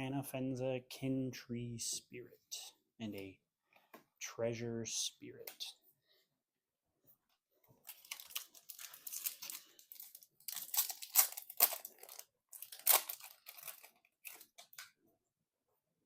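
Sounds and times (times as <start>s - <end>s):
foil wrapper crinkling and tearing: 7.8s - 14.9s.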